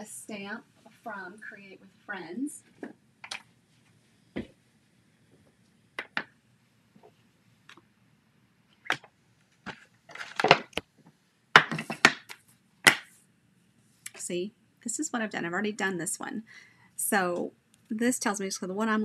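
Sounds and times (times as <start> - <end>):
clicks knocks and rustling: 8.9 - 10.9.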